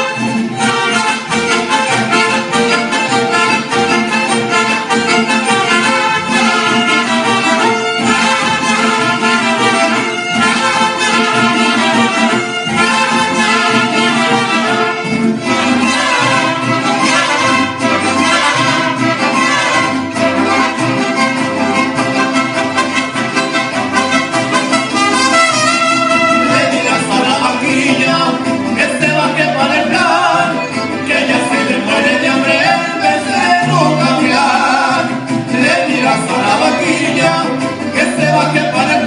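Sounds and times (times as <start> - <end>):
mariachi band with violins: 0.0 - 39.0.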